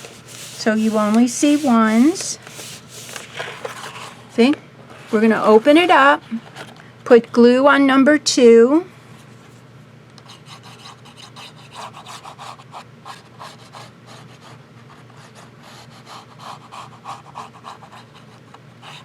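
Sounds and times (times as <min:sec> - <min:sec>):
glue rubbing on paper: 0:00.0 - 0:03.2, 0:10.2 - 0:14.5, 0:15.6 - 0:19.0.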